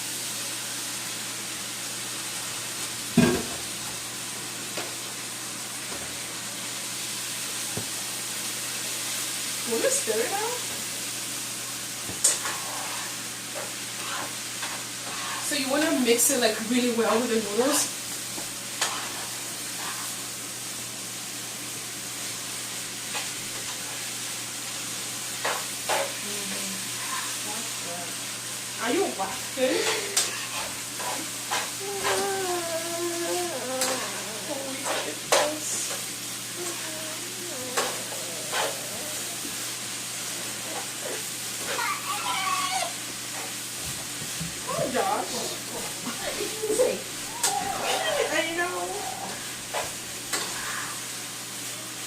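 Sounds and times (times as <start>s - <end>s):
food sizzling in a frying pan: 0.0s - 52.0s
utensil scraping pan: 12.2s - 16.0s, 18.8s - 20.2s, 26.9s - 27.4s, 29.7s - 32.4s, 37.7s - 39.3s.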